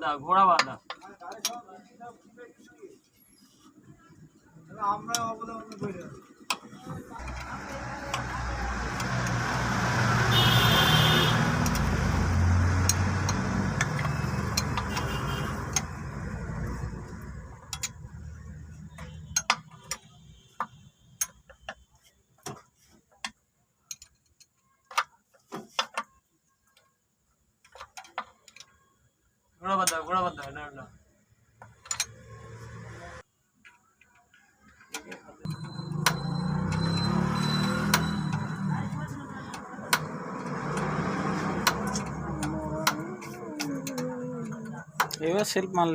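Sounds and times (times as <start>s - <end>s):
vehicle engine passing by: 6.9s - 18.5s, 32.1s - 33.2s, 35.5s - 44.9s
metallic clicks of hand tools: 12.7s - 16.9s, 17.6s - 18.2s, 31.7s - 32.2s, 34.9s - 45.4s.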